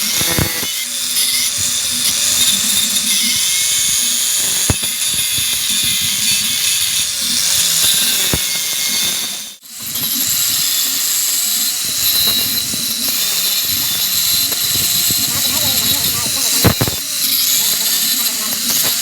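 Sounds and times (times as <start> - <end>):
grinder grinding steel: 0.0 - 19.0
sharp clicks: 14.4 - 19.0.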